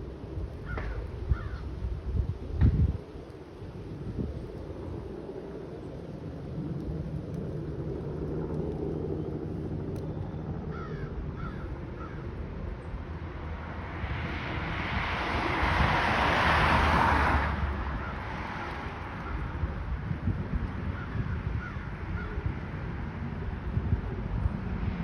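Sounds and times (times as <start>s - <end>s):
crows cawing: 0.6s - 1.7s, 10.7s - 12.3s, 21.0s - 22.4s
loud rushing noise: 13.5s - 19.2s.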